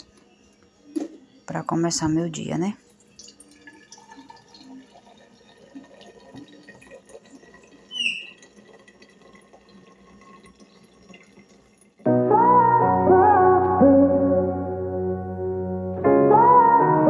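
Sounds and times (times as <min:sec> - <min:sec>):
faint trickling water: 0:01.5 - 0:12.1
brief high squeak: 0:07.9 - 0:08.5.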